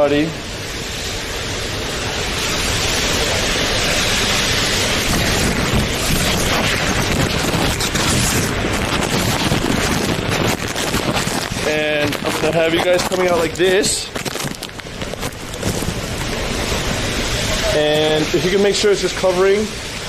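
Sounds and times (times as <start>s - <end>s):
plastic crinkling on microphone: 4.8s - 17.0s.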